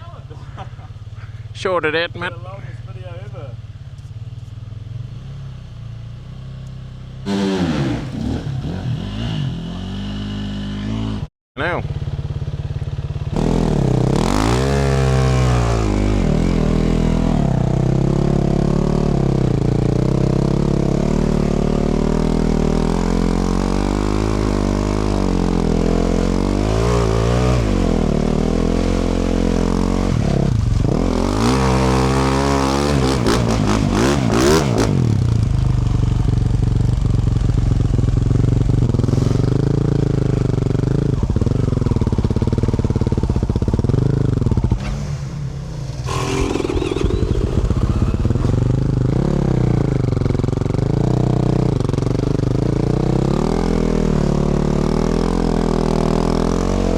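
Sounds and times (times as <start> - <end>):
dirt bike engine revving: 7.2 - 11.3, 13.2 - 36.4, 38.1 - 56.9.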